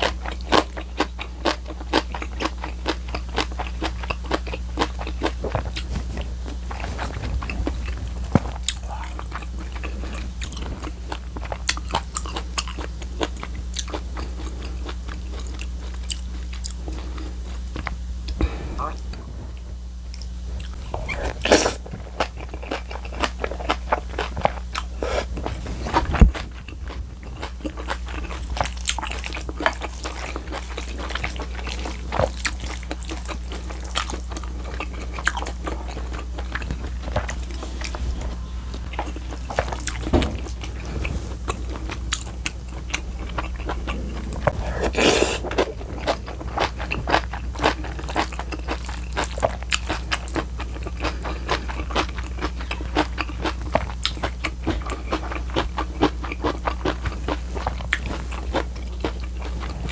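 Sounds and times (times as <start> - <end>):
chewing and crunching: 0.0 - 59.9
steady low hum: 0.0 - 59.9.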